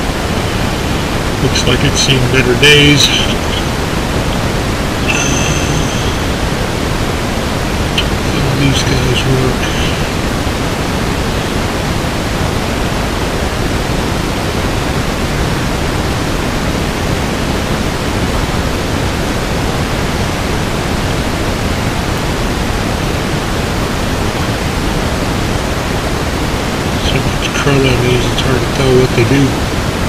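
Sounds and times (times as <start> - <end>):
steady rushing hiss: 0.0 - 11.9.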